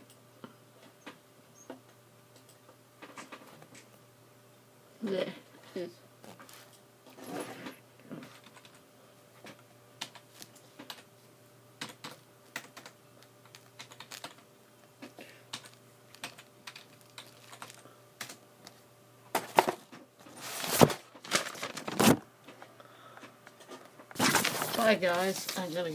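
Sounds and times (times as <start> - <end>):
faint electrical hum: 0.0 - 25.9
keyboard typing: 8.3 - 8.8, 11.8 - 14.4, 15.5 - 18.4.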